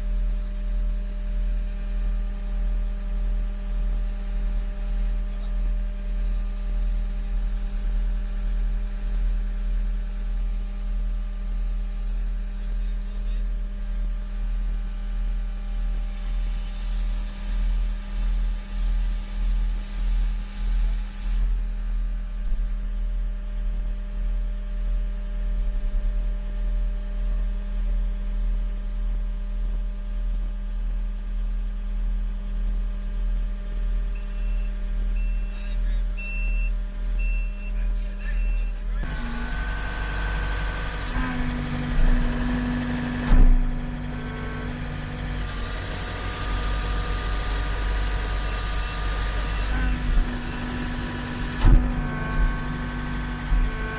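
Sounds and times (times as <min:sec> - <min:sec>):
heavy equipment engine idling: 0:39.2 - 0:53.9.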